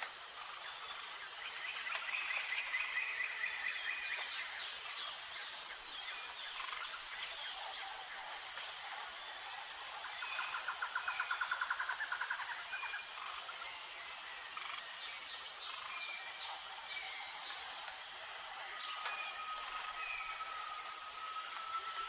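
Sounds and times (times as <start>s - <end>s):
high-pitched insect drone: 0.0s - 22.0s
steady whistle-like tone: 18.6s - 22.0s.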